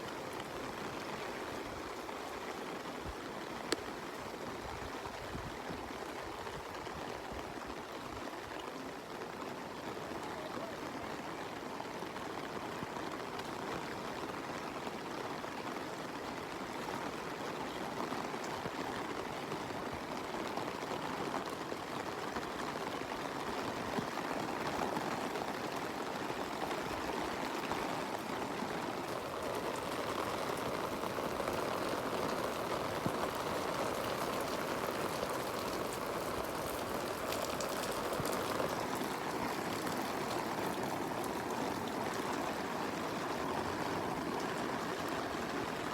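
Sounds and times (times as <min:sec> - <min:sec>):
running water: 0:00.0 - 0:07.3, 0:16.7 - 0:45.9
heavy rain: 0:00.0 - 0:45.9.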